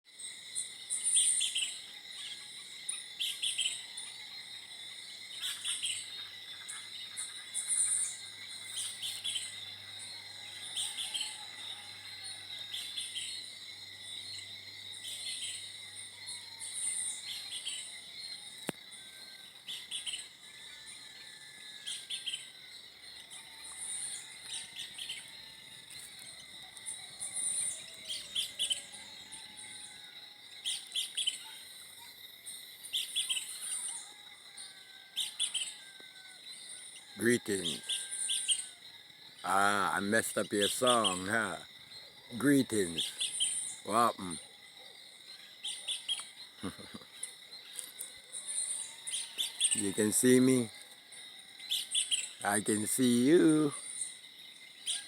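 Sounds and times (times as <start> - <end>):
high-pitched insect drone: 0.1 - 55.0.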